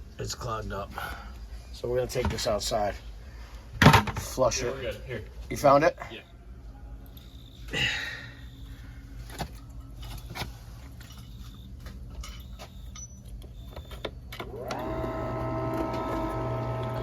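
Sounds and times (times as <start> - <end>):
small electric motor whining: 13.6 - 17.0.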